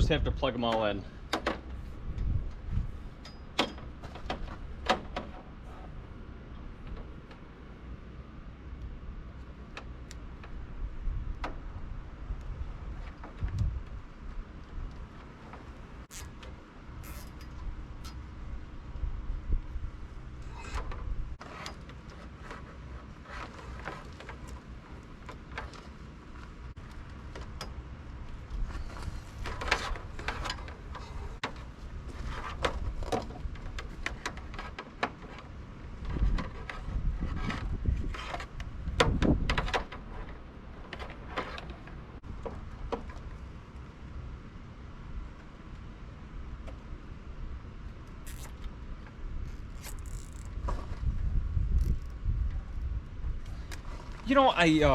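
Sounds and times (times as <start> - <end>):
steady low rumble: 0.0 - 21.4
connectors clicking and rustling: 48.2 - 48.8, 49.5 - 50.6, 51.8 - 52.2.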